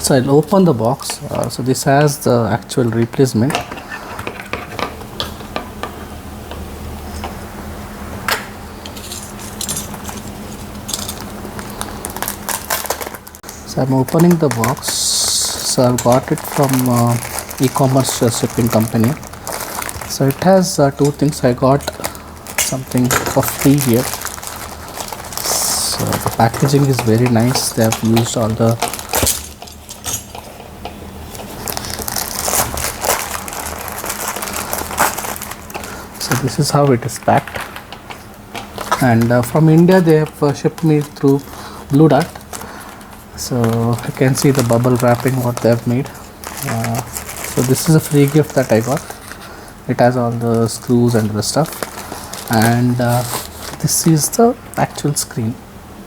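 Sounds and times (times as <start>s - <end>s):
bubble wrap crinkling: 0.0s - 4.4s, 9.0s - 55.4s
packaging rustling: 0.0s - 5.3s, 8.9s - 55.4s.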